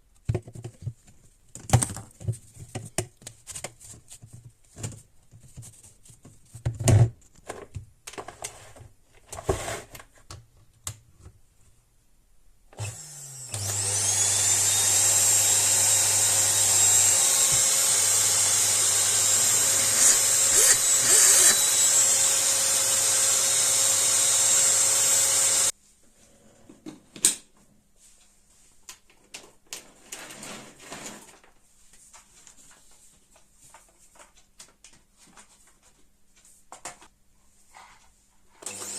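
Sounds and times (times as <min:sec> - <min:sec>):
handheld vacuum cleaner whine: 0:12.8 - 0:25.7, 0:38.6 - 0:38.9.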